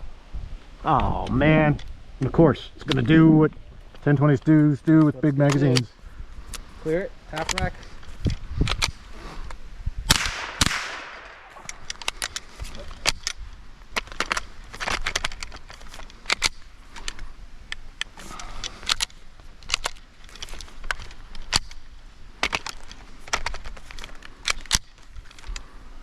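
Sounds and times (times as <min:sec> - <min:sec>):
rifle shots: 0:10.1 - 0:11.7.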